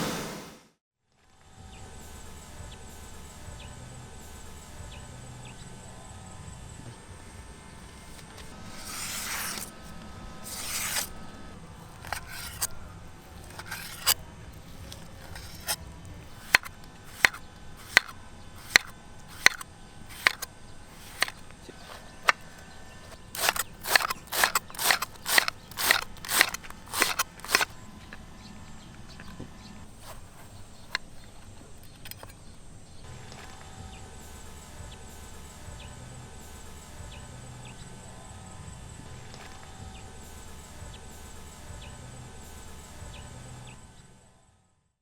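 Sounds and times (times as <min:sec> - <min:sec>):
knife slicing on board: 0:08.2 - 0:27.7
knife chopping on board: 0:12.0 - 0:12.7, 0:13.4 - 0:14.2, 0:14.8 - 0:27.7.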